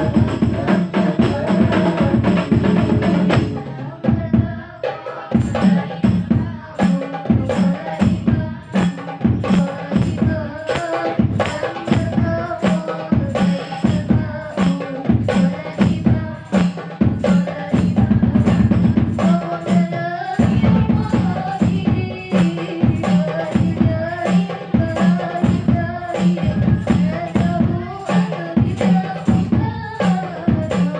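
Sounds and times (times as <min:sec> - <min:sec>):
deep drum thumps: 0:00.0 - 0:04.6.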